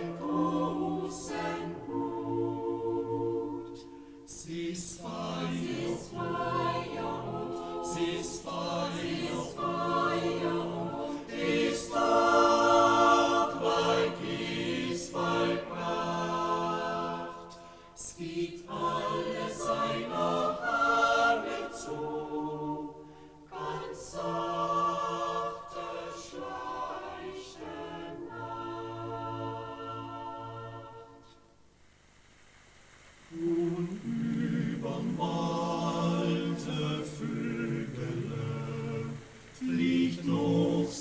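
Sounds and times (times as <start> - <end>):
choir singing in harmony: 0.0 - 31.6, 33.1 - 41.0.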